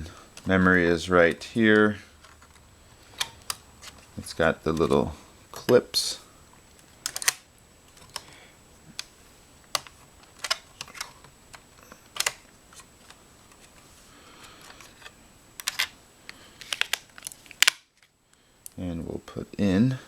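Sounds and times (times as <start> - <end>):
sharp plastic clicks: 6.9 - 13.2.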